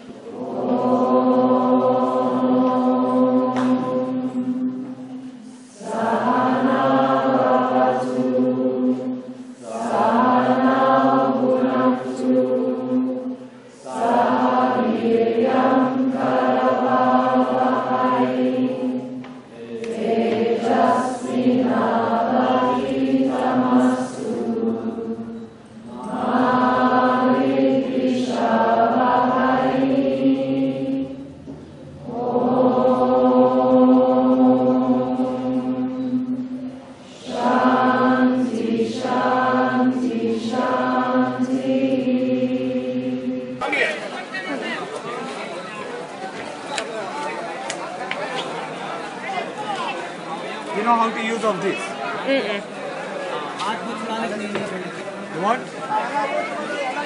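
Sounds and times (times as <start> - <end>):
group of voices chanting in unison: 0.0 - 44.8.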